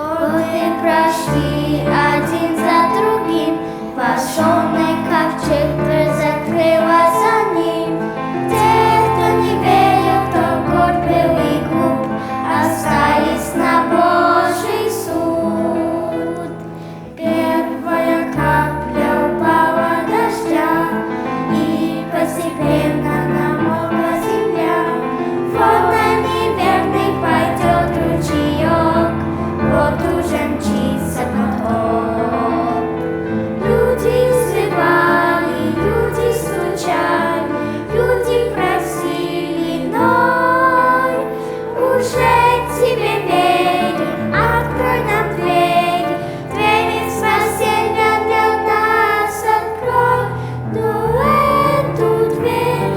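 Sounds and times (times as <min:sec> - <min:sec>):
children singing: 0:00.0 - 0:52.9.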